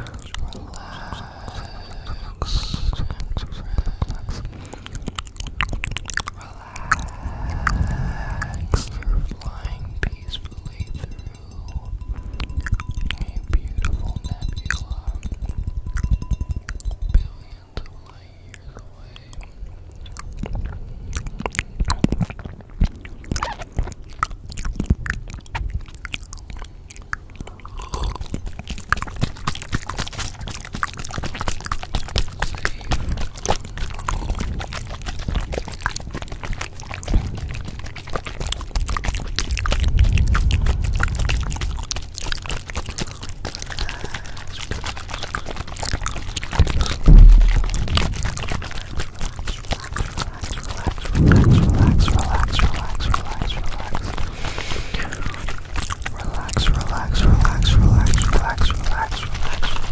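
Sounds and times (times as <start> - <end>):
low rumble: 0.0 - 24.0, 36.2 - 59.9
crackling and crunching clicks: 0.0 - 59.9
low thump: 47.1 - 48.5, 51.1 - 53.2.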